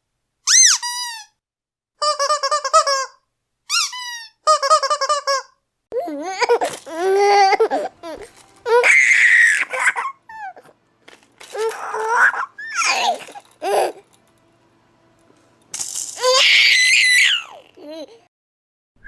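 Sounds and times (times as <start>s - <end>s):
baby laughing and squealing: 2.0s - 10.7s, 11.5s - 14.0s, 16.2s - 18.2s.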